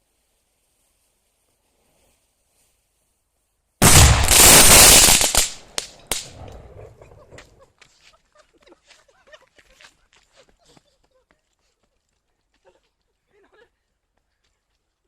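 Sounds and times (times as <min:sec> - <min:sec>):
sharp cracks: 0:03.8 - 0:06.6
firecracker blast: 0:03.8 - 0:06.9.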